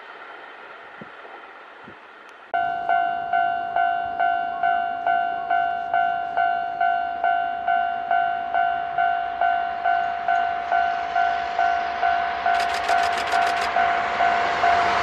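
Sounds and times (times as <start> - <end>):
train running noise: 0.0 - 15.0
sharp clicks of train wheels: 11.9 - 14.3.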